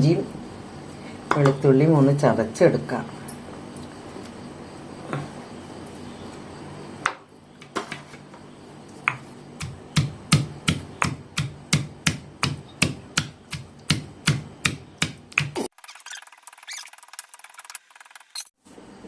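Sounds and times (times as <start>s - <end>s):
pounding ginger and garlic: 7.8s - 15.7s.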